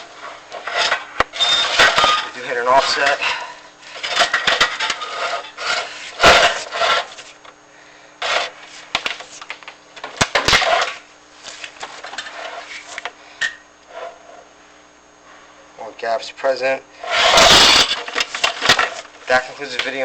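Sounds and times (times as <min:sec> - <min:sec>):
camera cable scraping inside flue: 0:03.9 - 0:07.4, 0:08.2 - 0:08.7, 0:17.0 - 0:19.0.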